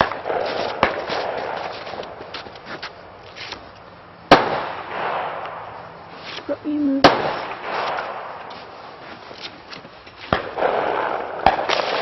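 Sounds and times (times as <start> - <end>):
sharp cracks: 0.0 - 2.7, 4.3 - 8.8, 9.4 - 12.0
rustling shuffling noise: 0.3 - 3.9, 6.1 - 6.9, 8.4 - 10.4.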